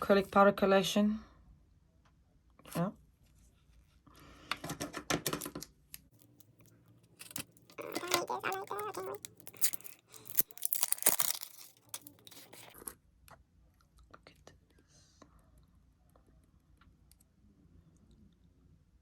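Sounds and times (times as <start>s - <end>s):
packaging torn and crinkled: 6.2s - 12.8s.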